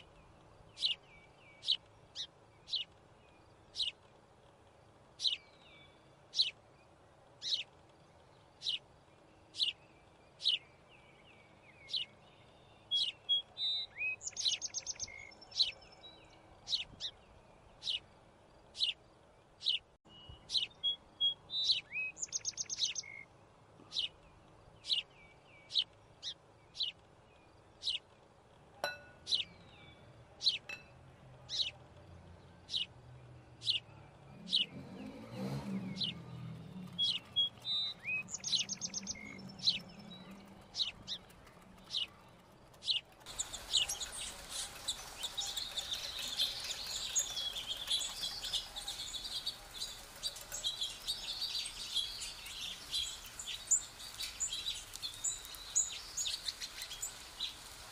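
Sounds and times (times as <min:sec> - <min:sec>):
bird chirping: 0:00.0 - 0:04.2, 0:05.2 - 0:28.2, 0:28.8 - 0:57.9
rapid bird trill: 0:33.6 - 0:57.9.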